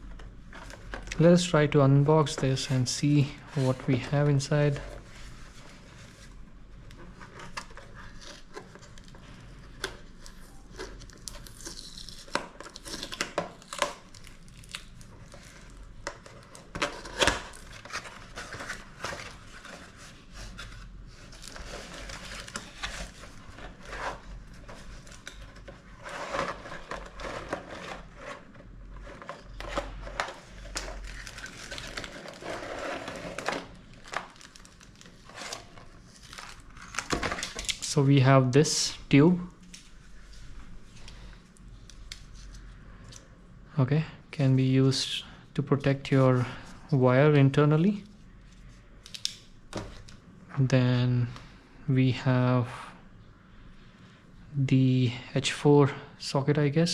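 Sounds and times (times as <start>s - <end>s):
plastic packaging crinkling and tearing: 7.1s - 38.0s.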